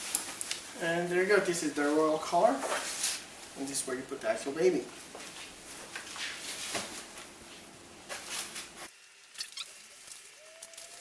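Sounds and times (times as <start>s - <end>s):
soft rustling: 5.0s - 9.0s.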